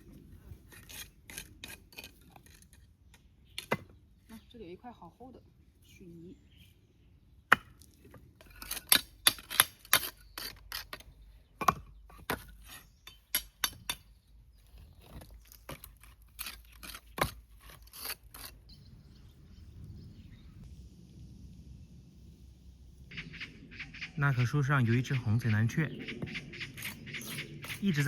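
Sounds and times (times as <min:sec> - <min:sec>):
tool chipping cement off bricks: 0:07.5 - 0:14.1, 0:15.0 - 0:18.6.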